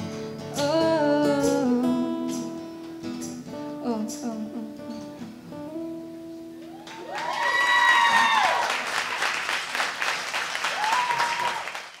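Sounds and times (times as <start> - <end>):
acoustic guitar notes: 0.0 - 6.8
whooping cheer: 6.6 - 9.3, 10.6 - 12.0
audience applause: 6.8 - 12.0.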